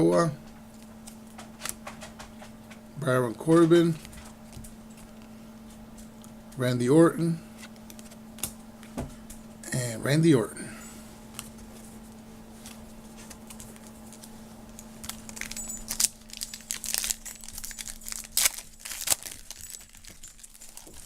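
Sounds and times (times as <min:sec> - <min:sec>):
faint steady hum: 0:00.0 - 0:21.0
wrapper crinkling and tearing: 0:12.6 - 0:21.0.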